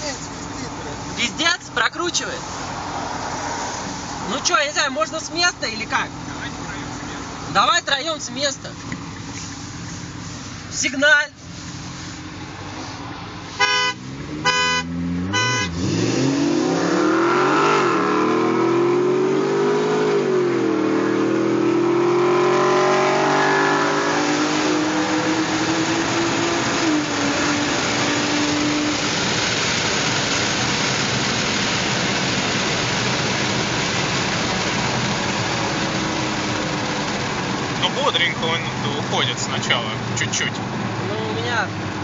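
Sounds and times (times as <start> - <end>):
car engines accelerating: 0.0 - 42.0
road and wind noise: 0.0 - 42.0
car horn blasts: 13.6 - 15.9.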